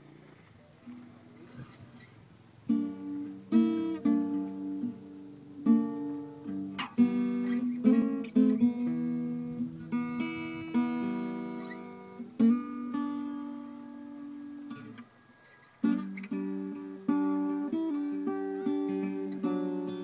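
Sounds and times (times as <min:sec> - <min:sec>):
acoustic guitar strumming: 0:00.0 - 0:20.0.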